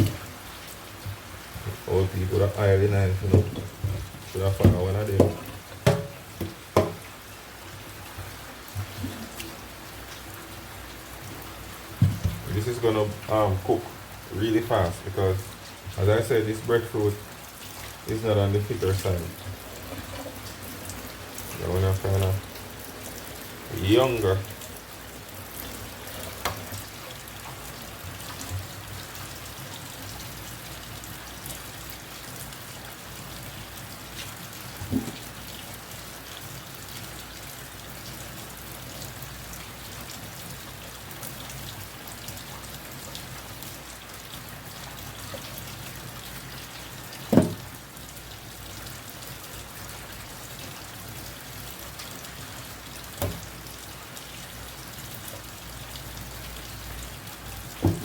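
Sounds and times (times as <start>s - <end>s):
tap running into a sink: 0.0s - 0.3s, 2.6s - 7.1s, 11.9s - 12.8s, 18.1s - 20.6s, 26.4s - 28.7s, 34.8s - 35.4s, 47.2s - 47.8s, 53.2s - 53.5s, 57.7s - 58.0s
knocks of knife handling: 3.3s - 7.0s, 47.3s - 47.6s.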